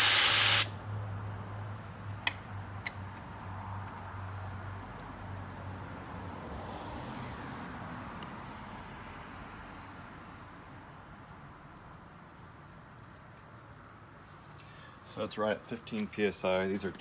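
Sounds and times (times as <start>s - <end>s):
air hissing out of tire valve: 0.0s - 1.1s.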